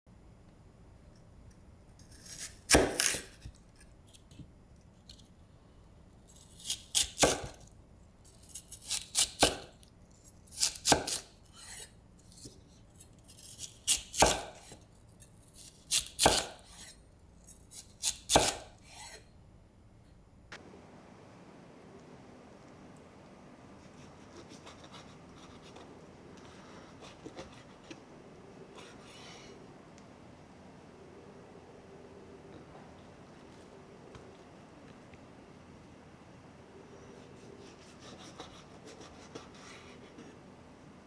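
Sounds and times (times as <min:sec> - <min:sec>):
knife chopping on cutting board: 0:02.1 - 0:03.5, 0:06.6 - 0:07.6, 0:08.8 - 0:09.8, 0:10.5 - 0:12.5, 0:13.3 - 0:14.8, 0:15.6 - 0:17.0, 0:18.0 - 0:19.2.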